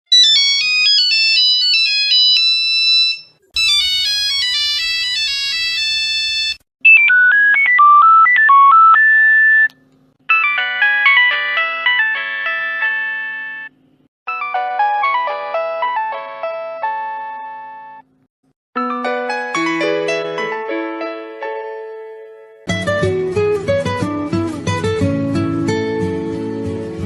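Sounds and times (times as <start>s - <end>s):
phone ringtone melodies: 0.1s - 9.7s, 10.3s - 18.0s, 18.8s - 21.4s.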